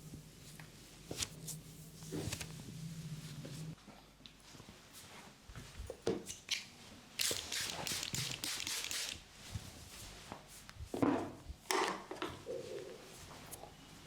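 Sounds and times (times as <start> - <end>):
hands rubbing hair: 7.2 - 9.2.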